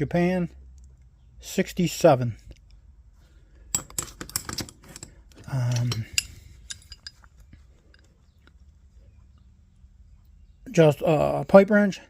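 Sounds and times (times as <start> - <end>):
metal tools clinking: 3.7 - 8.4.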